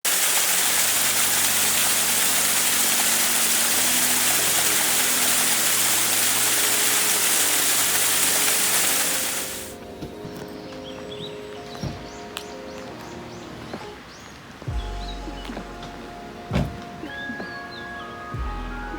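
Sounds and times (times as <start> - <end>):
waterfall rushing: 0.0 - 10.0
soft music of held notes: 1.0 - 18.9.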